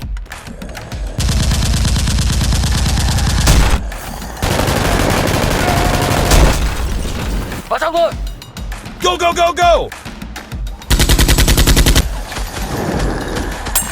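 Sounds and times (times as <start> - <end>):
automatic gunfire bursts: 1.2 - 6.8, 10.9 - 12.0.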